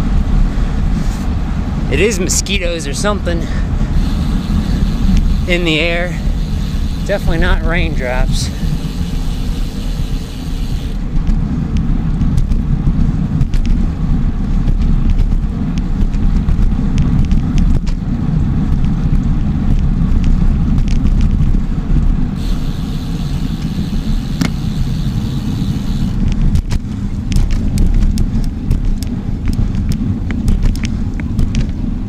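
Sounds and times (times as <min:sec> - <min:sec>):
bicycle road rumble: 0:00.0 - 0:32.0
wind: 0:00.0 - 0:32.0
high hiss: 0:04.0 - 0:11.0, 0:22.4 - 0:26.2.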